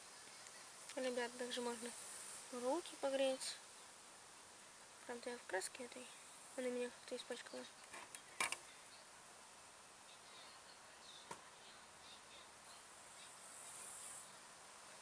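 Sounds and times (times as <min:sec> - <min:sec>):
faint high chirping: 0:10.1 - 0:14.5.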